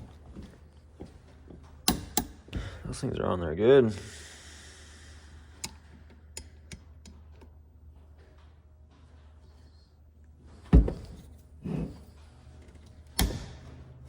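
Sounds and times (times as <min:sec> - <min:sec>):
heavy metal clunks: 0:10.6 - 0:12.0.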